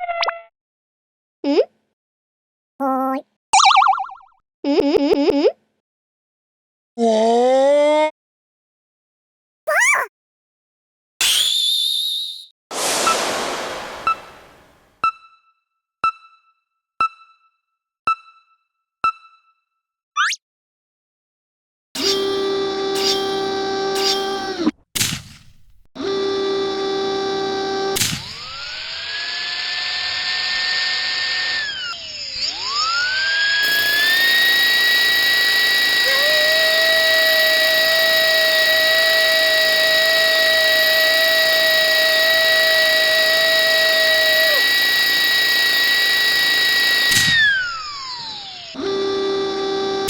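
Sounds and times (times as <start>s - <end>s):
lower second whine: 12.8s - 14.8s
dental drill whining: 22.0s - 24.6s, 26.1s - 50.0s.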